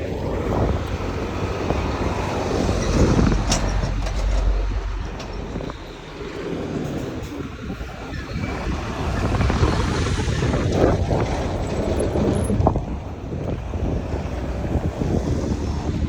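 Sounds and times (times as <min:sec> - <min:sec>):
low rumble: 0:00.0 - 0:13.0
wind buffeting microphone: 0:00.0 - 0:16.0.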